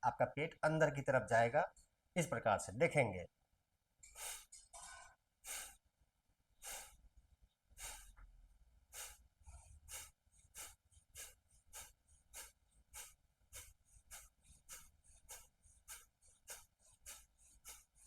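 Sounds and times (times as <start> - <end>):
forceful nasal exhalations: 4.0 - 4.6, 5.4 - 5.8, 6.6 - 7.1, 7.8 - 8.3, 8.9 - 18.0.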